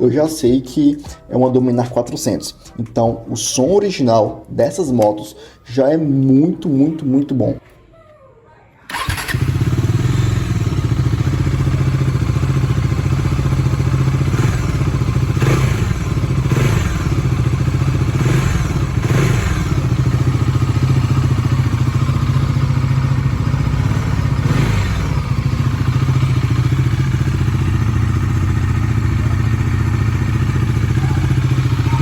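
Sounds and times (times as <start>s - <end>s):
motorcycle engine revving: 8.9s - 32.0s.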